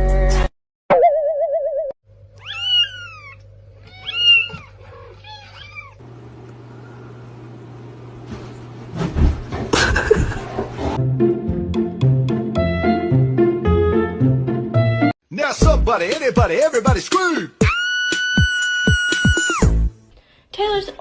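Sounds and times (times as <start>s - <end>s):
cat meowing: 2.4s - 6.0s.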